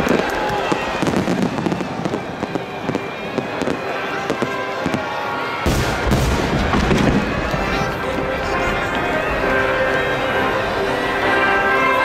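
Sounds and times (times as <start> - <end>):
fireworks cracks and bangs: 0.0 - 10.1
heavy low boom: 5.6 - 9.0.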